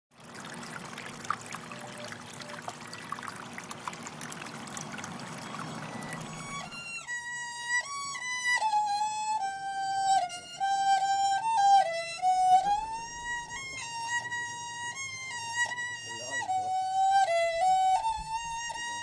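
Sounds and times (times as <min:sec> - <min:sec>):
sliding single melody line: 0:00.5 - 0:07.0.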